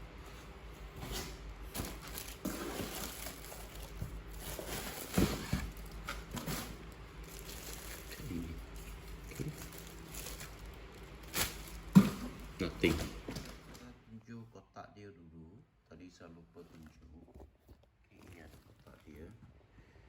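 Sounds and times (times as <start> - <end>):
packaging rustling: 0.9 - 13.9.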